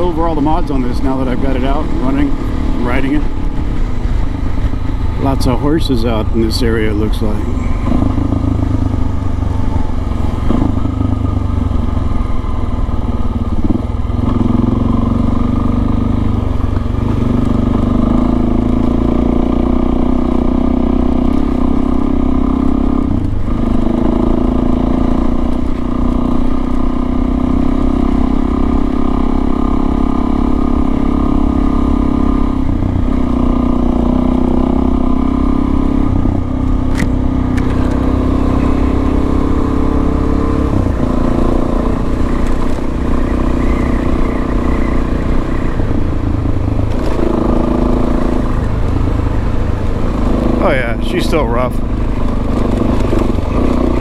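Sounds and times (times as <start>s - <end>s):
wind rumble: 0.0s - 22.1s
motorcycle engine running: 0.0s - 54.0s.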